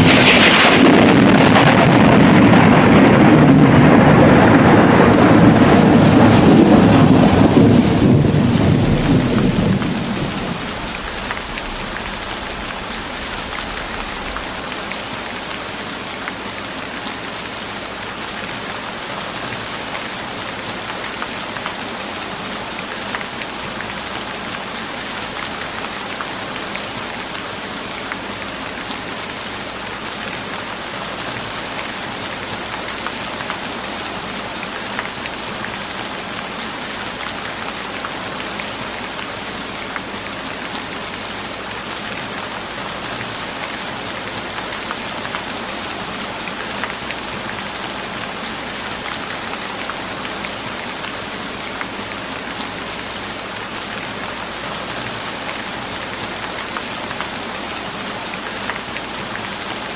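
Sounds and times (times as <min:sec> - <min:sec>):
thunder rolling: 0:00.0 - 0:15.5
steady rain: 0:00.0 - 0:59.9.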